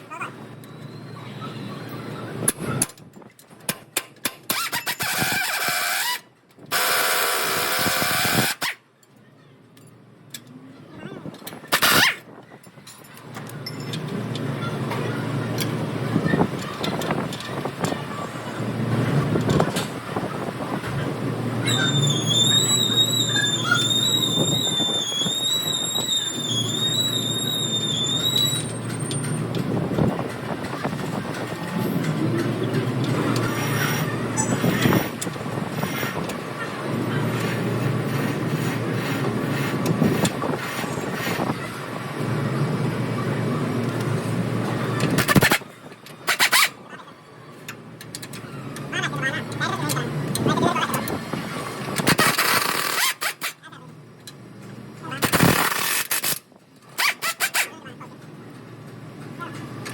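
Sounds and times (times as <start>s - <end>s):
car road rumble: 9.6s - 52.3s.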